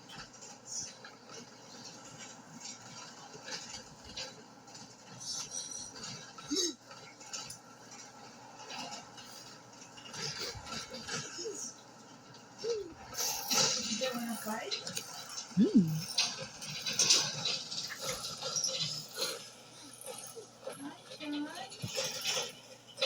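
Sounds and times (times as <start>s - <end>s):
brief squeaky vocal sound: 15.6s - 16.1s.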